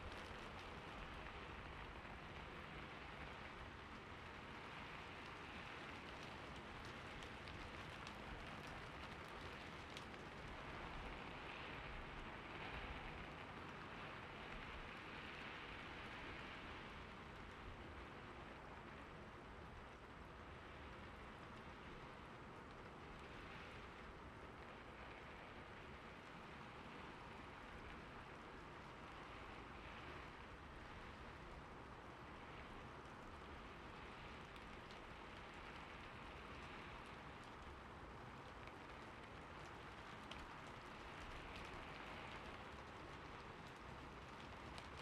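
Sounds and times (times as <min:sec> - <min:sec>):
sharp drip-like ticks: 0:32.1 - 0:45.0.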